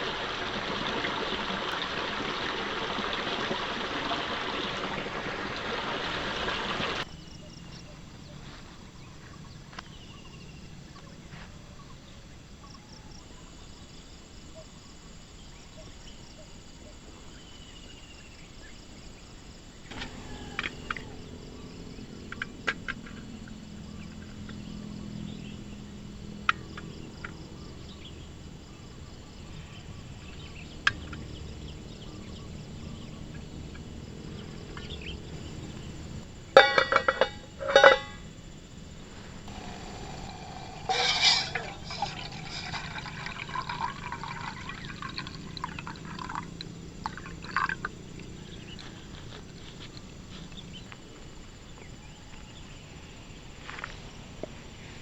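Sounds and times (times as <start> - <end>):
faint bird calls: 19.9 - 22.0.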